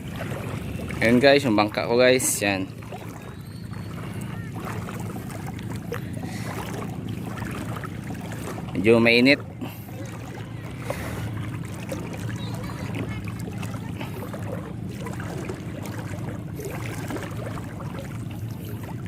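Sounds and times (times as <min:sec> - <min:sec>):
boat engine droning: 0:00.0 - 0:19.0
water splashing and sloshing: 0:00.0 - 0:19.0.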